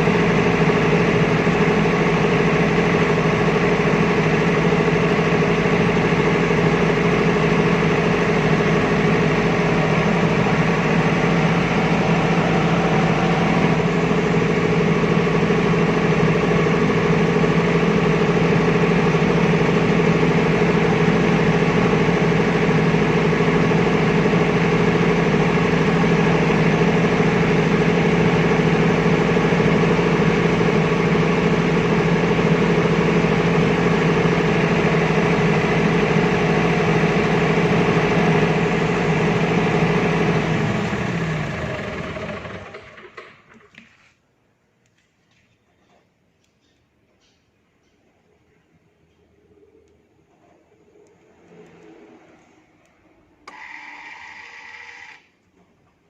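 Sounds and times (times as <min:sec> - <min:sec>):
generator engine humming: 0:00.0 - 0:44.0, 0:53.4 - 0:55.2.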